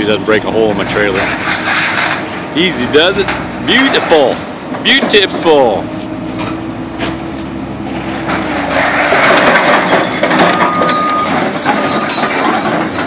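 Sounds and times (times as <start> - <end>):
garage doors crunching and scraping: 0.0 - 5.8, 7.8 - 13.0
high squeal of straining material: 9.8 - 13.0.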